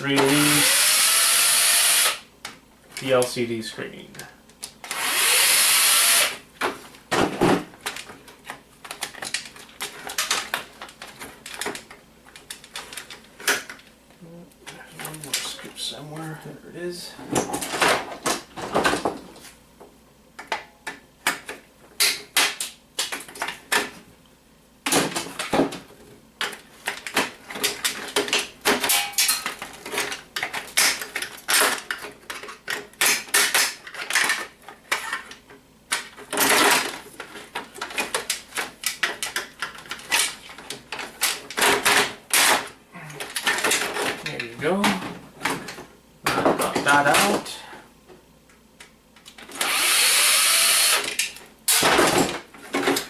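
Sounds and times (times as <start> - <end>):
printer parts clicking and rattling: 7.8 - 13.9, 26.4 - 45.0.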